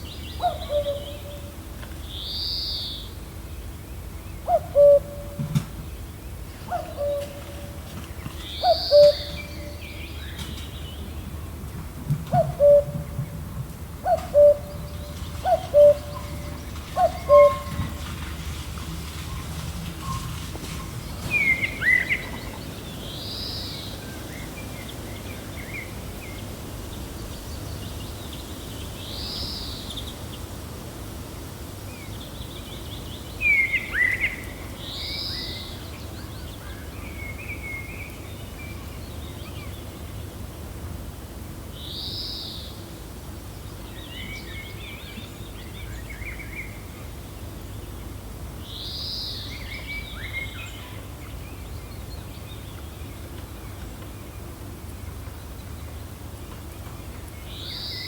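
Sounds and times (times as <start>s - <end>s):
birds chirping: 5.9s - 11.6s, 12.4s - 30.5s
wind rumble: 9.2s - 31.1s.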